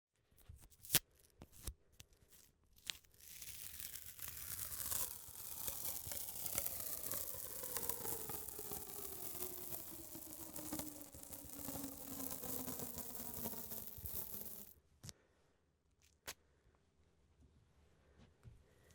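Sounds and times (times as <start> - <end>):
tape tearing off roll: 3.0 - 14.7.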